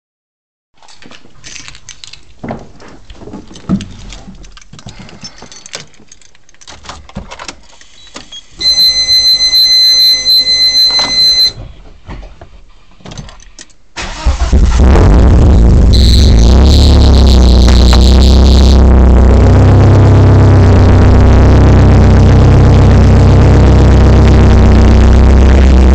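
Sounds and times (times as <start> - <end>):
dashboard warning buzzer: 8.6 - 11.6, 15.9 - 25.9.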